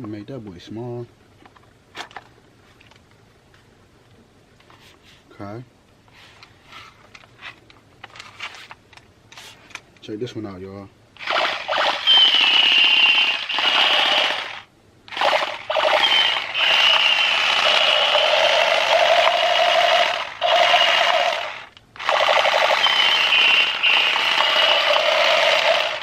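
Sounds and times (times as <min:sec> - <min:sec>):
toy gun machine-gun sound effect: 0:11.2 - 0:26.0.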